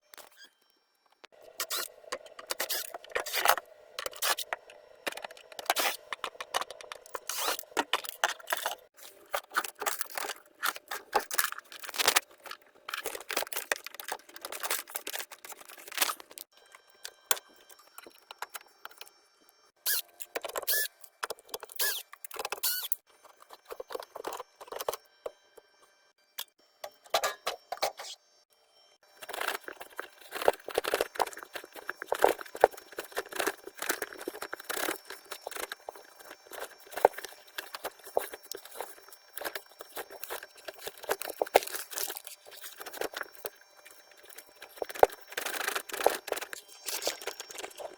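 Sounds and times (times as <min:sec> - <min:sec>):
hard objects clicking and rattling: 0:01.6 - 0:19.0, 0:29.1 - 0:47.9.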